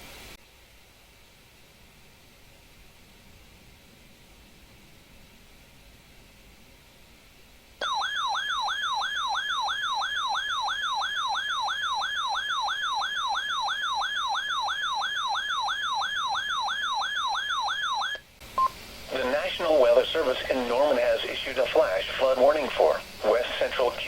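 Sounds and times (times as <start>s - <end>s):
warbling alarm siren: 7.8s - 18.2s.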